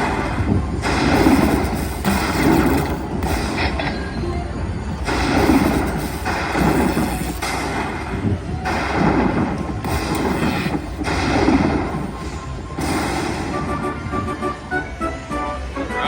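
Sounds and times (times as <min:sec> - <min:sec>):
deep booms: 0:05.0 - 0:14.5
slot machine game music: 0:08.8 - 0:16.0.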